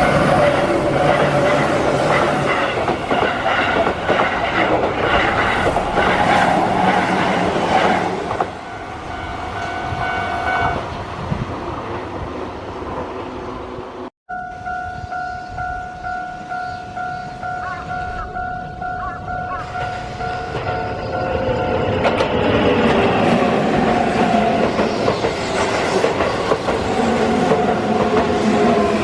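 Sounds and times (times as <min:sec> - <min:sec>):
train wheels clattering on rails: 0:00.0 - 0:08.6, 0:15.9 - 0:29.0
crossing bell ringing: 0:08.5 - 0:10.8, 0:14.3 - 0:22.1.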